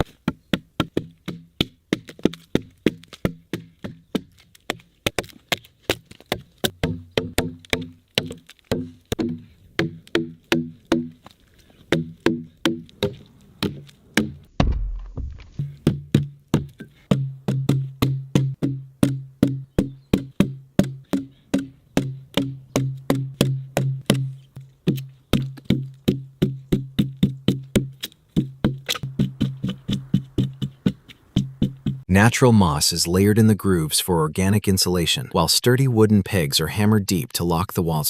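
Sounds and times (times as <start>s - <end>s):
music with knocking beat: 6.7s - 11.2s, 12.0s - 12.8s, 15.6s - 32.1s
deep boom: 14.5s - 15.6s.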